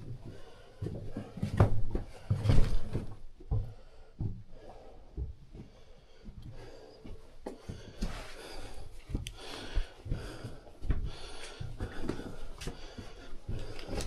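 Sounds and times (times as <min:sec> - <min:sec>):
heavy breathing: 0:00.0 - 0:14.0
footsteps on rocky floor: 0:00.2 - 0:04.4, 0:07.1 - 0:14.0.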